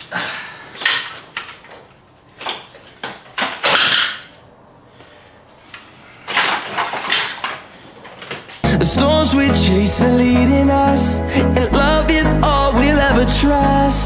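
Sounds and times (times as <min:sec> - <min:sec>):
tools and parts knocking: 0:00.7 - 0:04.4, 0:05.7 - 0:08.6.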